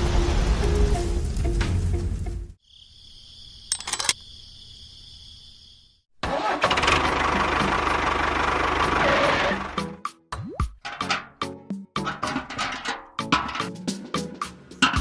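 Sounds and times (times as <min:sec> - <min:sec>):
engine-like pulsing noise: 0:06.7 - 0:09.8.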